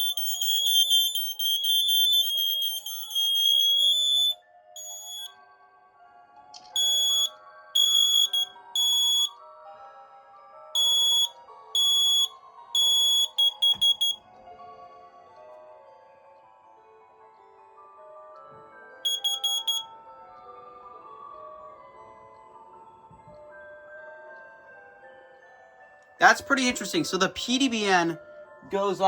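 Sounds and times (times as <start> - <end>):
high-pitched alarm blare: 0.0 - 5.3, 6.8 - 9.3, 10.8 - 14.2, 19.1 - 19.9
alarm beeping: 0.0 - 5.4, 6.8 - 9.4, 10.8 - 14.2, 19.1 - 19.9
alarm chirps: 0.0 - 5.4, 6.7 - 9.4, 10.8 - 14.2, 19.1 - 19.9.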